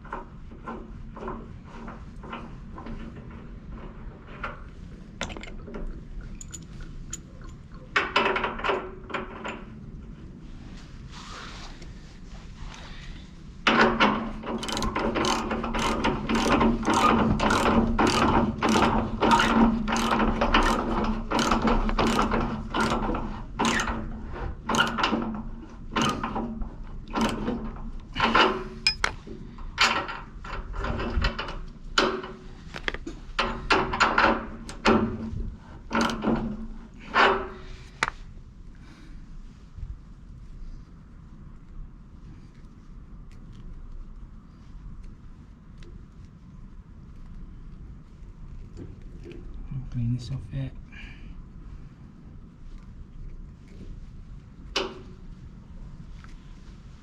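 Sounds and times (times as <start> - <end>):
steady low hum: 0.0 - 57.0
metallic ratcheting strokes: 14.5 - 24.1, 24.7 - 25.2, 26.0 - 26.4.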